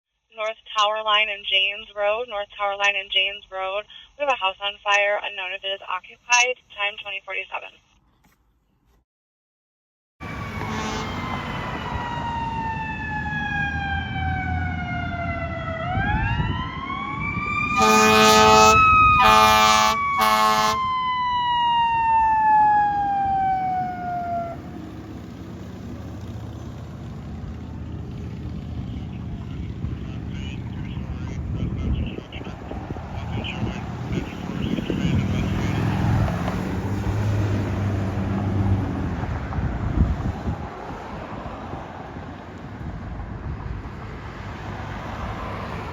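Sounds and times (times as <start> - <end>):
fire engine siren wailing: 10.2 - 26.5, 32.1 - 39.4
road noise: 10.2 - 45.9
truck engine: 10.2 - 45.9
air horn blasts: 10.4 - 11.4, 17.7 - 20.9.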